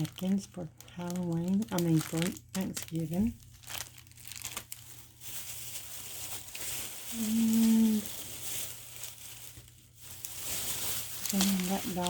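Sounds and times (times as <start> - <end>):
packaging crinkling: 0.0 - 12.0
woman humming: 7.1 - 8.2.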